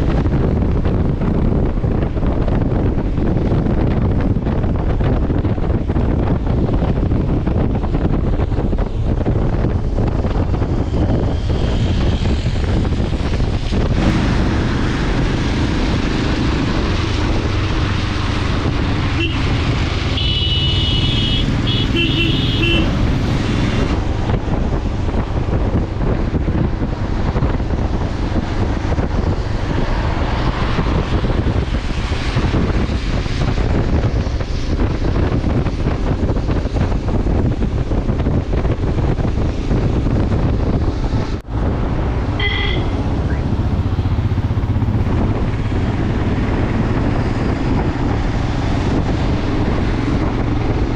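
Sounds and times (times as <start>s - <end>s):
highway road noise: 0.0s - 50.9s
wind rushing over microphone: 0.0s - 50.9s
vehicle horn: 19.1s - 19.5s, 20.1s - 23.0s, 42.4s - 43.4s.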